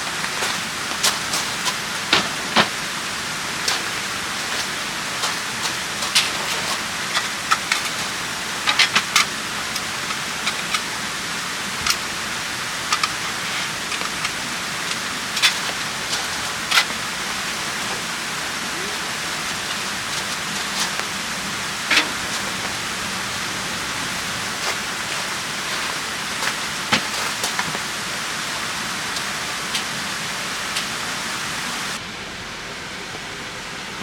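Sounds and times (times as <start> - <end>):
steady rain: 0.0 - 34.0.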